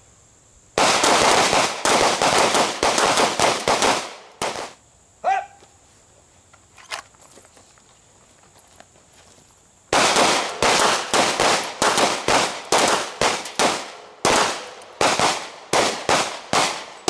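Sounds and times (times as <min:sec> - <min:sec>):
pistol shots: 0:00.8 - 0:04.8, 0:09.9 - 0:17.0
person shouting: 0:05.2 - 0:05.6.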